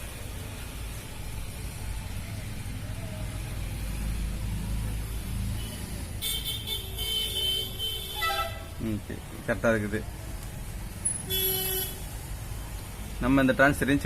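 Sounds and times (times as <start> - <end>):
low rumble of road traffic: 0.0 - 14.0
vehicle horn: 5.6 - 8.8, 11.3 - 12.0.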